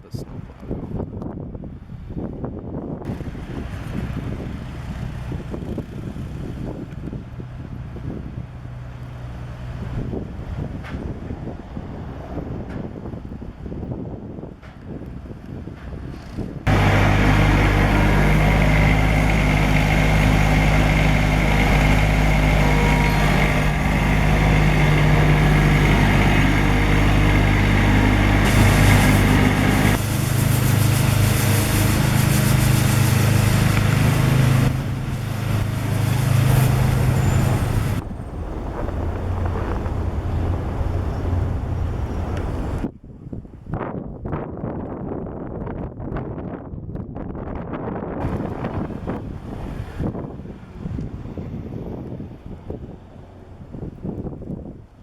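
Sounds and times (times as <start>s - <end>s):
wind: 0.0s - 55.0s
street noise: 14.6s - 42.9s, 48.2s - 55.0s
heavy vehicle engine humming: 16.7s - 42.9s, 48.2s - 53.9s.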